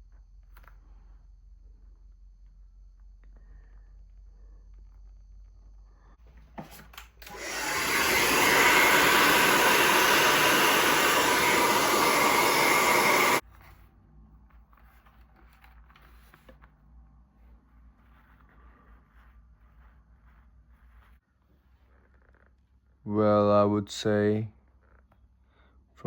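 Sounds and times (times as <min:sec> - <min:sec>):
hair dryer switch click: 0:07.0 - 0:10.8
hair dryer blowing: 0:07.2 - 0:13.4.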